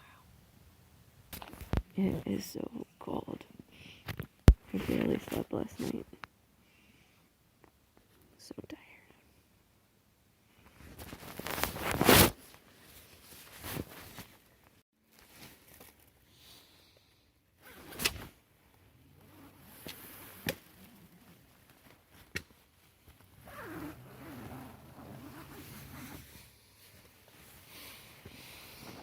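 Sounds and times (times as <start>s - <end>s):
rustling: 10.6s - 16.2s, 17.6s - 29.0s.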